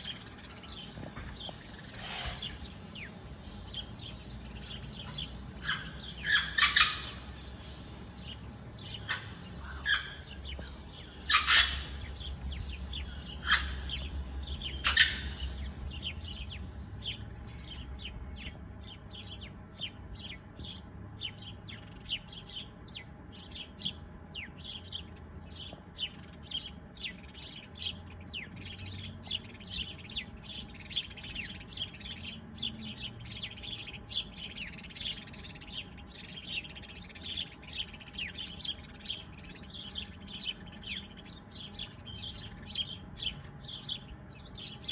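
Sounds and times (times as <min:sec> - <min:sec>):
thin steady high tone: 0:00.0 - 0:17.9
songbirds chirping: 0:00.0 - 0:44.9.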